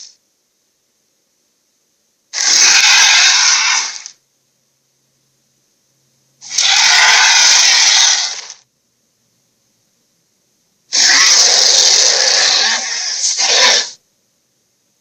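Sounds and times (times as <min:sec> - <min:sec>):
raspy hissing dragon roar: 0:02.4 - 0:04.1, 0:06.4 - 0:08.6, 0:10.9 - 0:14.0.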